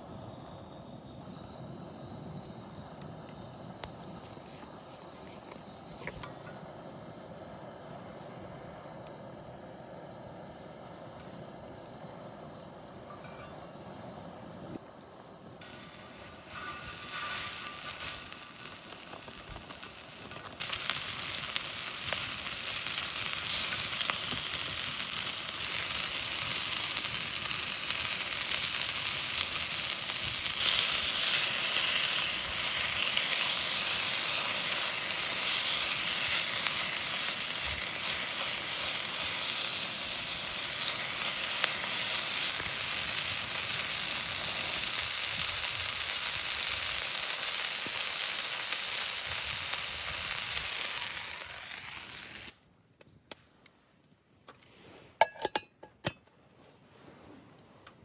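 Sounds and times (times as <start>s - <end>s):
food sizzling: 15.6s - 52.5s.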